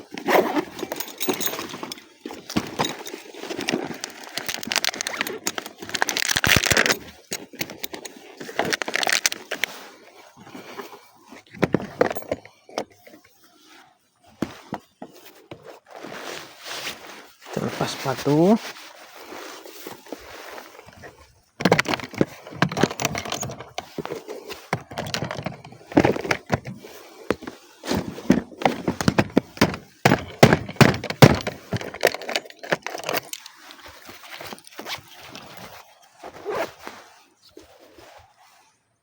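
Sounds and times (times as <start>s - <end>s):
knocks thuds and cracks: 28.7s - 31.9s.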